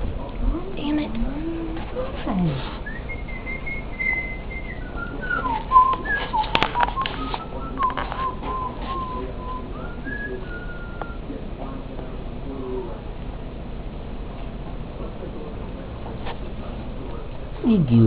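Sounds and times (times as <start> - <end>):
puppy whining: 0.9 - 7.3.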